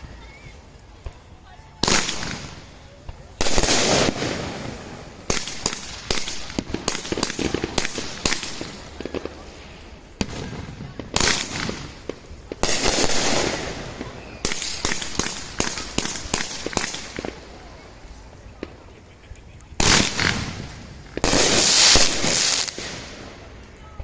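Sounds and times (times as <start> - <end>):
firework crackling: 0.0 - 24.0
firework cake firing shots: 1.8 - 9.5, 10.2 - 17.5, 19.8 - 23.4.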